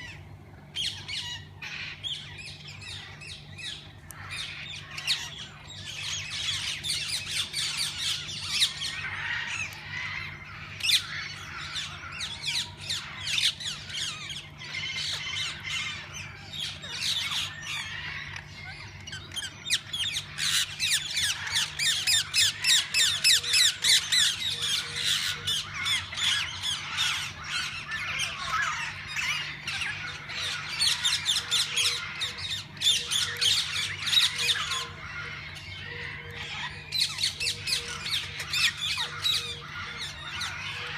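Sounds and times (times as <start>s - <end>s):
parakeets squawking and chattering: 0.0s - 40.9s.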